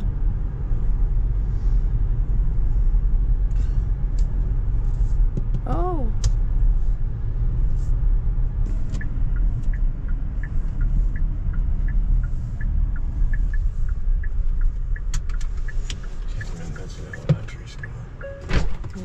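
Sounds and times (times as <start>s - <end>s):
car road noise rumble: 0.0s - 19.0s
faint light ticking: 8.9s - 18.3s.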